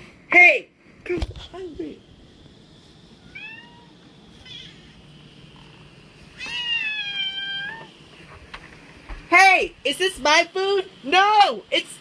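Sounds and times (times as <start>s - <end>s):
cat meowing: 3.2s - 5.0s, 6.4s - 7.9s.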